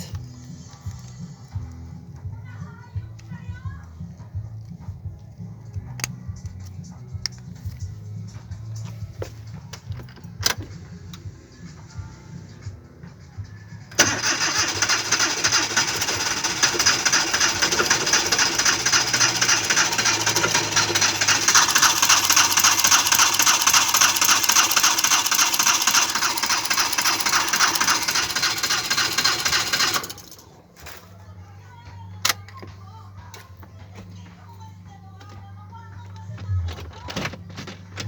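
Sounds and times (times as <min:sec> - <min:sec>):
starter motor cranking car engine: 0:13.9 - 0:30.5.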